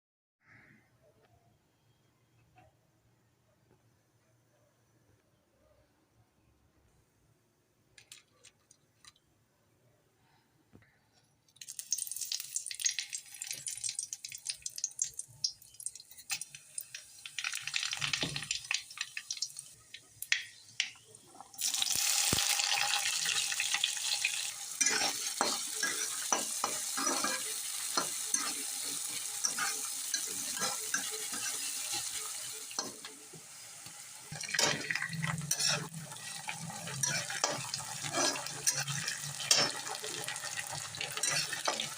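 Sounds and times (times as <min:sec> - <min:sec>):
cooking hiss: 0:11.6 - 0:41.9.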